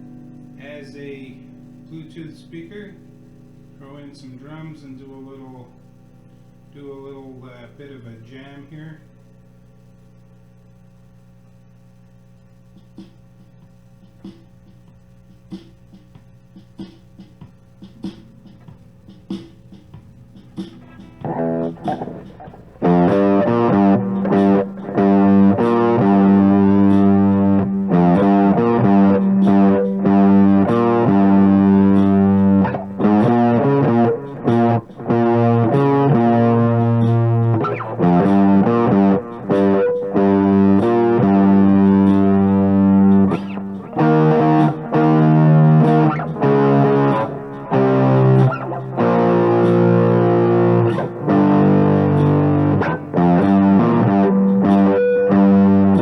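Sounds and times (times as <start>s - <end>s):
overdriven electric guitar chords: 0.0s - 8.0s, 17.8s - 56.0s
backing drum track: 12.7s - 56.0s.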